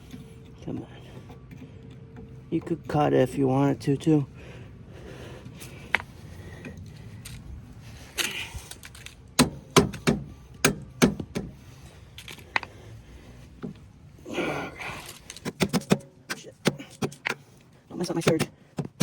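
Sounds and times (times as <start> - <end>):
pliers clicking and scraping metal: 15.0 - 18.6.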